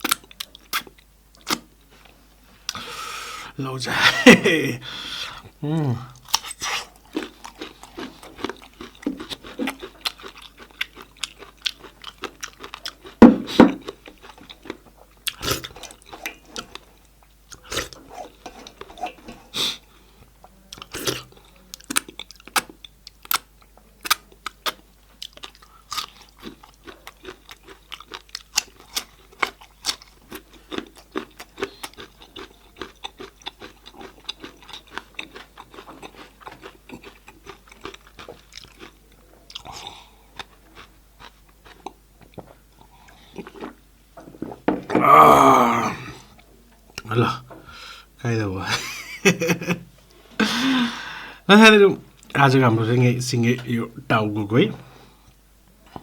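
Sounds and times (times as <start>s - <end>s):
chewing and biting: 0.0s - 2.8s, 6.2s - 19.8s, 20.7s - 44.6s.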